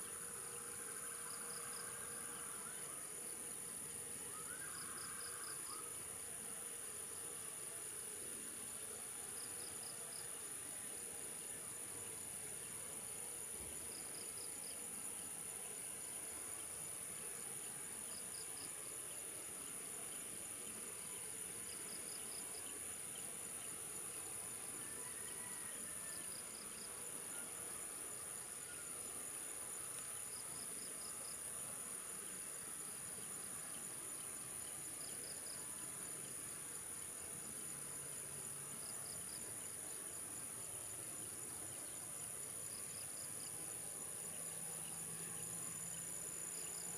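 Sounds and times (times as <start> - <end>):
insects chirping: 0.0 - 6.6, 8.7 - 46.9.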